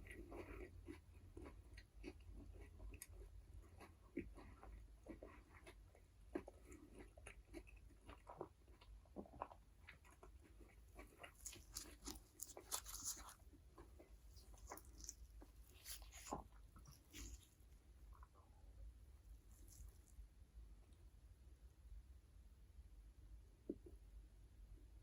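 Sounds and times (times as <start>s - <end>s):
chewing with soft crunches: 0.0s - 21.1s
crisp food crackling: 9.8s - 18.4s.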